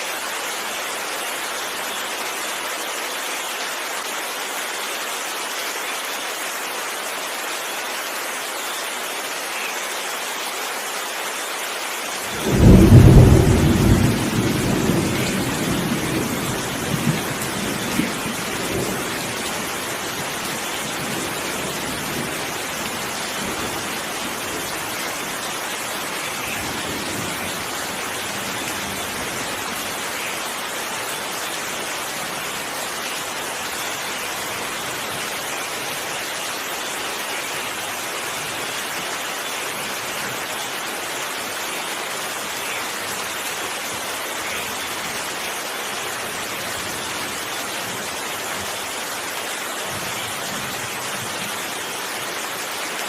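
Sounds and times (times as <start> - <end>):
heavy rain hissing: 0.0 - 53.0
thunder clap rumbling: 12.4 - 19.4.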